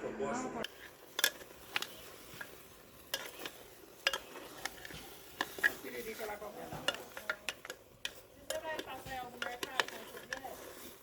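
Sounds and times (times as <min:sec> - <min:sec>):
frying hiss: 0:00.6 - 0:11.0
utensil knocking against pan: 0:03.1 - 0:10.5.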